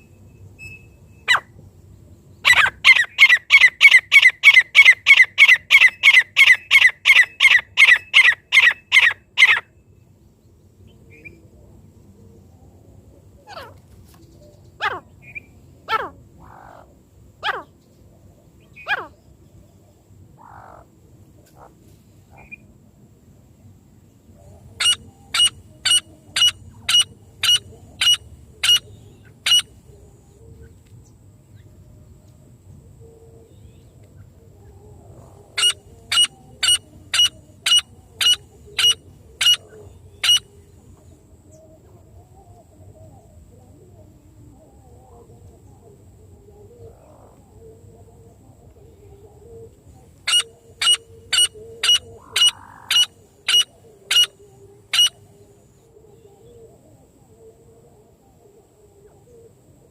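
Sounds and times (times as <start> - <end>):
francolin calling: 2.4 - 9.8, 24.4 - 30.8, 33.4 - 42.5, 46.5 - 56.7.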